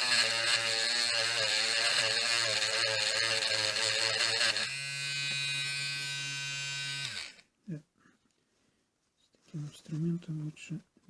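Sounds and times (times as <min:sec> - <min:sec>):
electric grinder with wire brush: 0:00.0 - 0:07.4.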